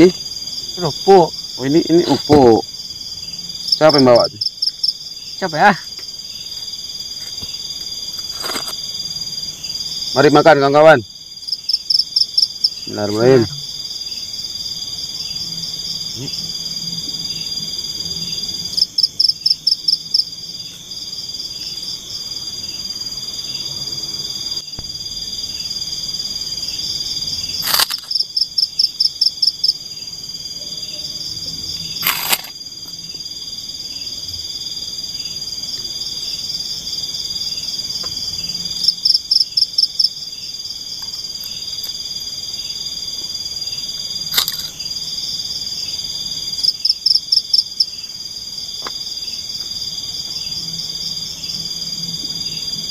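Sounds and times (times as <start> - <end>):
insect chorus drone: 0.0 - 52.9
pulsing insect call: 0.0 - 52.9
sharp clicks: 27.6 - 28.1, 32.0 - 32.6.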